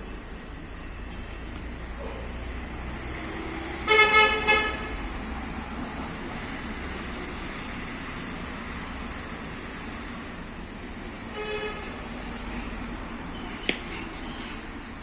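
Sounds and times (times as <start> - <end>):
road traffic: 0.0 - 15.0
car horn toot: 3.8 - 5.0, 11.3 - 12.0.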